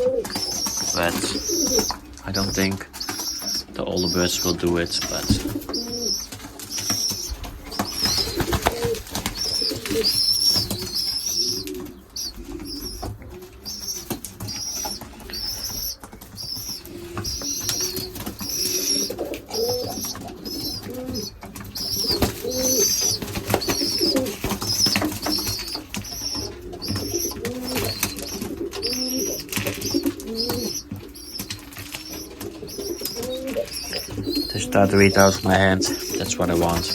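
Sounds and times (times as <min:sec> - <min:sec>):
pigeons cooing: 0:00.0 - 0:36.9
young pigeons cheeping: 0:00.0 - 0:36.9
wing flaps: 0:05.2 - 0:11.0.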